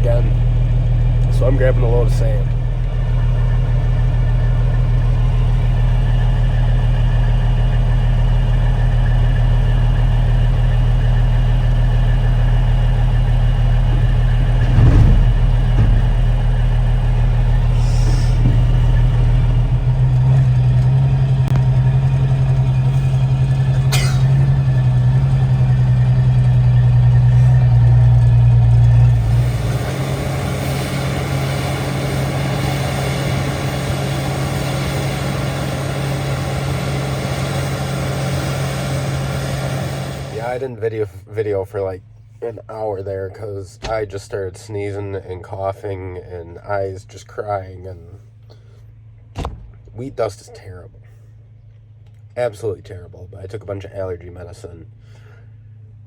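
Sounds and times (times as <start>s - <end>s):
diesel truck engine running: 0.0s - 56.0s
knock: 14.6s - 16.3s, 49.4s - 49.9s
short air hiss: 17.7s - 18.4s.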